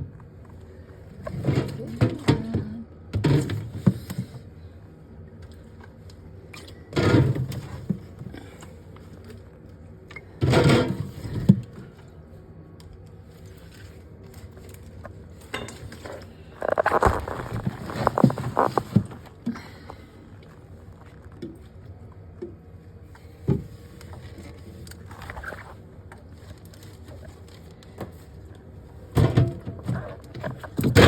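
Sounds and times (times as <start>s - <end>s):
containers clattering and rustling: 1.1s - 4.3s, 6.9s - 8.4s, 10.2s - 11.9s, 13.5s - 21.7s.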